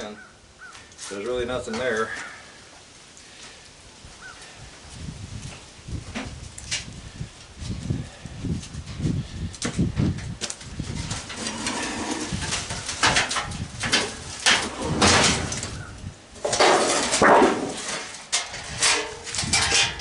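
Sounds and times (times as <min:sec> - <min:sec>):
sheet metal scraping and rattling: 0:10.8 - 0:20.0.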